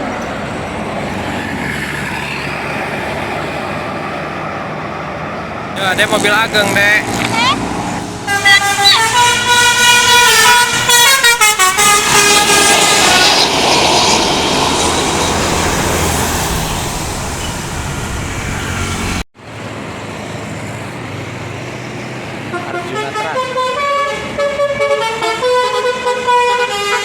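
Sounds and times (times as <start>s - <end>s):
bus passing with rushing noise: 0.0s - 27.0s
musical air horn tune: 8.0s - 13.4s.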